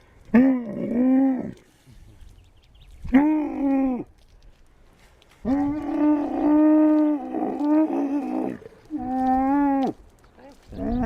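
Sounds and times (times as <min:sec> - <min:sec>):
camel calling: 0:05.4 - 0:11.0.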